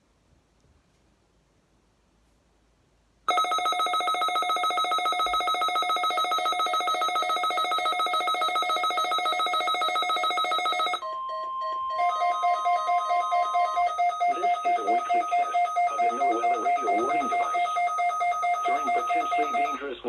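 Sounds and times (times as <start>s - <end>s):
steady alert tone: 3.3s - 19.9s
emergency alert beeping: 3.3s - 20.0s
announcer speaking: 13.9s - 20.0s.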